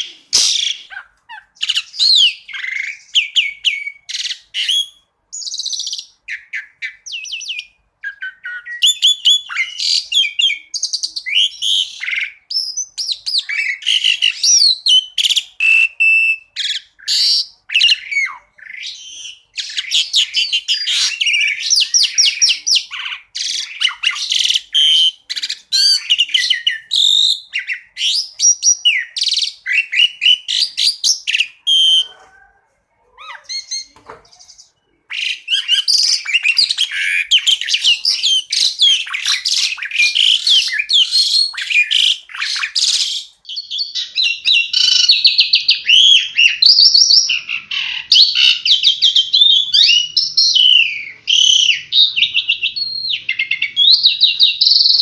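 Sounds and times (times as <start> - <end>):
bird song with chirps and trills: 0.0 - 55.0.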